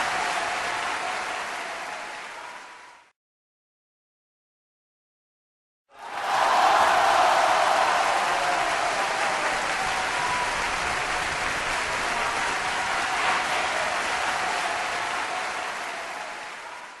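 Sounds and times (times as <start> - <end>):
crowd cheering and applauding: 0.0 - 3.1, 5.9 - 17.0.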